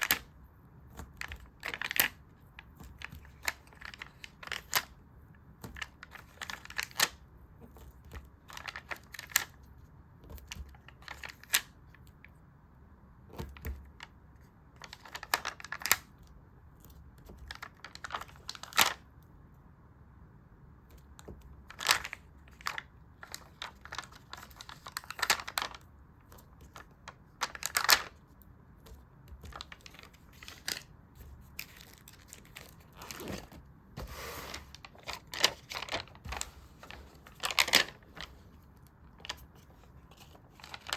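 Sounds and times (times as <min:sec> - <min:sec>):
paper crinkling: 0:05.6 - 0:12.1, 0:21.7 - 0:40.9.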